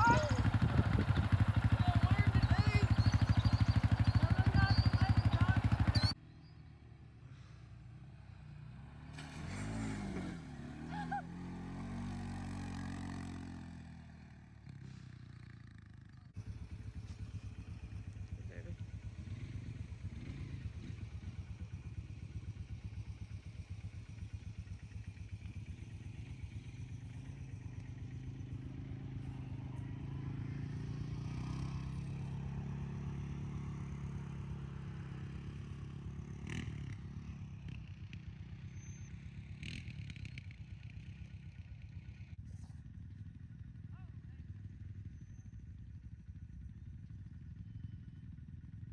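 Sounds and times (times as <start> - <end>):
small engine running: 0.0 - 6.2, 14.4 - 40.7.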